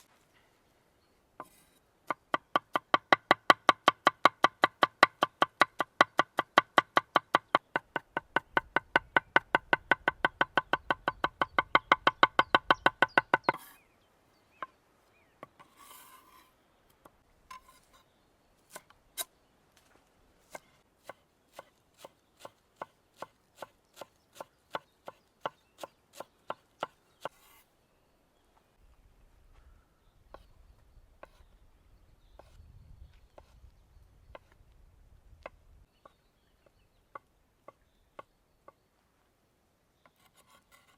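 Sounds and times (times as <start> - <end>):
knife scraping board: 1.4 - 1.8, 15.6 - 16.5, 17.5 - 18.0, 27.3 - 27.6, 40.2 - 40.9.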